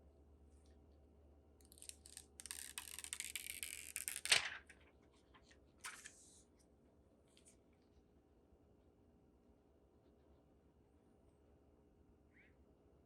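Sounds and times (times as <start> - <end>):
plastic tearing rip: 1.6 - 4.7.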